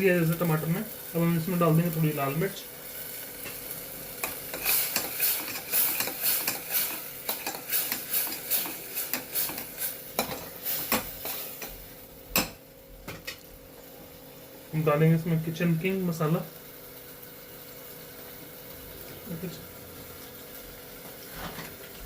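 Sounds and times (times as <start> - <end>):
masala sizzling: 0.0 - 22.0
spoon scraping pan: 3.5 - 11.8.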